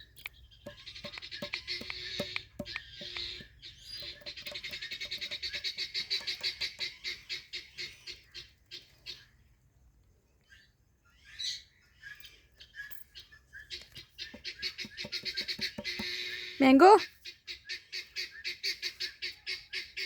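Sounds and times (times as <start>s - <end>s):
parakeet chattering: 0.7s - 7.1s.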